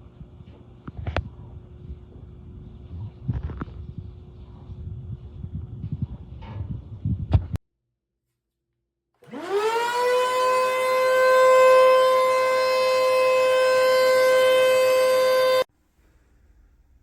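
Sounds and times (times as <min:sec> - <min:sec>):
vacuum cleaner motor whining: 0:09.2 - 0:15.7.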